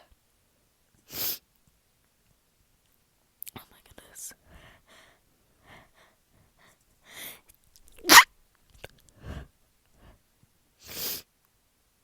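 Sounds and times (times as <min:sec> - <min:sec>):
soft breathing: 0:03.9 - 0:07.5, 0:09.0 - 0:11.3
person sneezing: 0:08.0 - 0:08.2.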